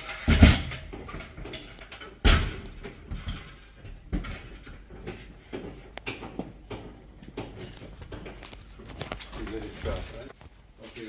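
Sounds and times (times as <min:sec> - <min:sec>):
vending machine thudding: 0:00.2 - 0:01.5, 0:02.2 - 0:04.6.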